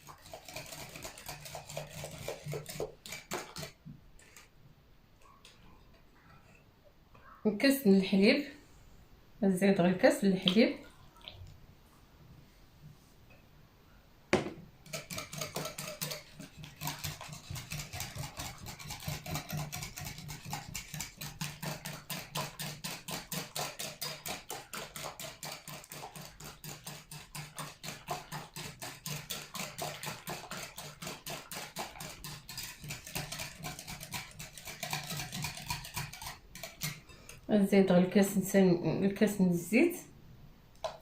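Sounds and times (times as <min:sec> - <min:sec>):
whisk beating batter in bowl: 0:00.0 - 0:04.5, 0:14.8 - 0:37.6.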